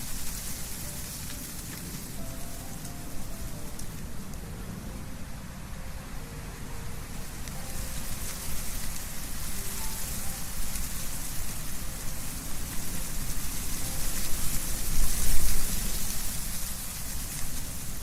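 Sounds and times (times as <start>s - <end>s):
leaves rustling: 0.0s - 18.0s
wind through trees: 0.0s - 18.0s.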